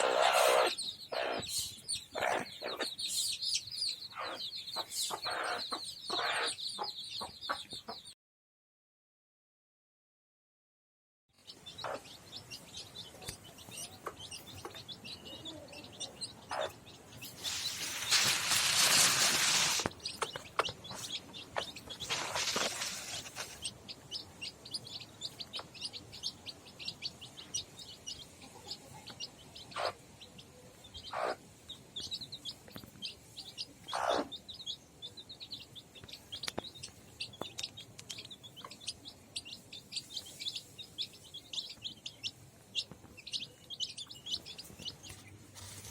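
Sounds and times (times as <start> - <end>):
chicks peeping: 0.0 - 8.1, 11.4 - 45.9
rushing rustling noise: 17.4 - 20.0, 22.0 - 23.6.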